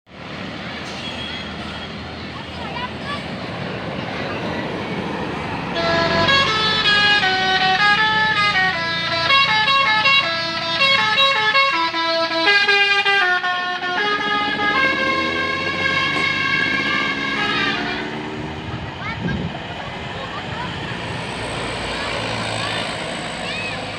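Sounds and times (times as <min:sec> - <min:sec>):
bus engine running: 0:00.1 - 0:23.9
musical bus horn tune: 0:05.6 - 0:18.6.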